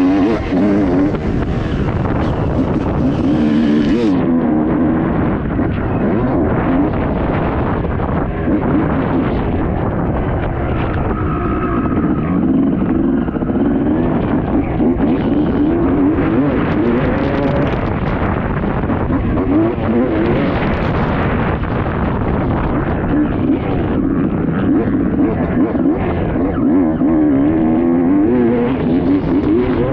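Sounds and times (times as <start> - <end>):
two-stroke engine revving: 0.0 - 10.6, 11.4 - 29.9.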